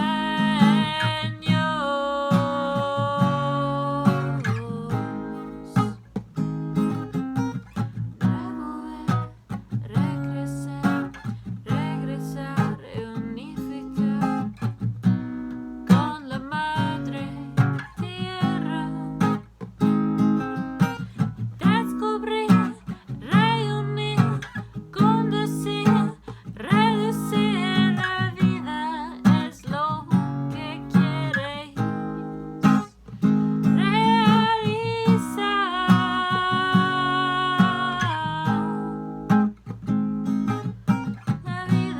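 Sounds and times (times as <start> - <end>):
person singing: 0.0 - 5.8, 16.0 - 19.3, 33.8 - 39.0, 41.4 - 41.9
acoustic guitar strumming: 0.0 - 41.9.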